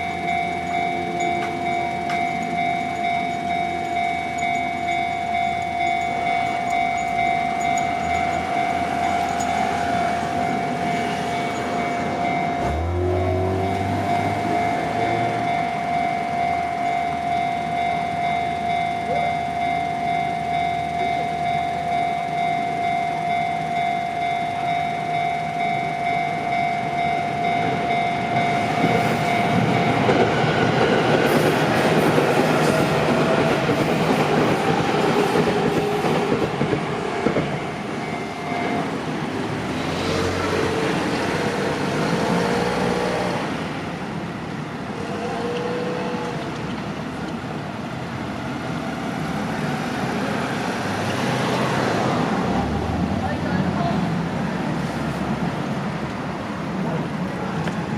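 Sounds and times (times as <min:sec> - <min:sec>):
level crossing warning chime: 0:00.0 - 0:30.5, 0:36.8 - 0:41.4
train wheels clattering on rails: 0:00.0 - 0:44.0
road vehicle passing: 0:05.6 - 0:16.5, 0:27.6 - 0:57.9.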